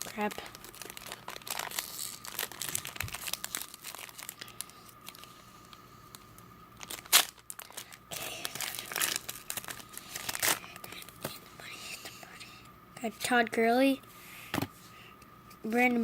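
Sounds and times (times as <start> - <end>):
wrapper crinkling and crackling: 0.0 - 11.4.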